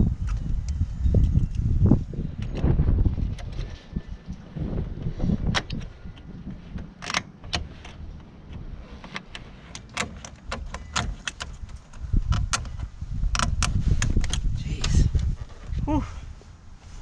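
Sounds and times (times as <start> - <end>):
low rumble: 0.0 - 6.9.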